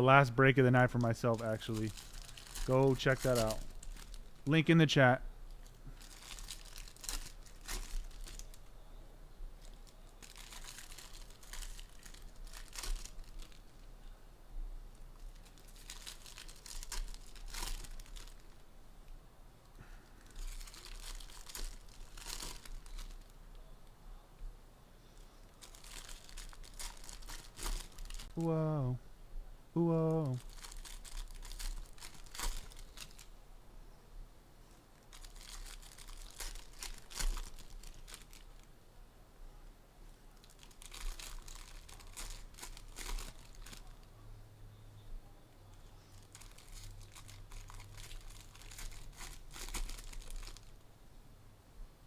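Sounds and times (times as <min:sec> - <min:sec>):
wrappers tearing and crinkling: 0:00.5 - 0:04.9, 0:05.5 - 0:08.7, 0:09.6 - 0:13.9, 0:15.2 - 0:18.6, 0:20.2 - 0:23.3, 0:25.5 - 0:28.4, 0:30.1 - 0:33.3, 0:35.0 - 0:38.7, 0:40.4 - 0:44.1, 0:46.1 - 0:50.8.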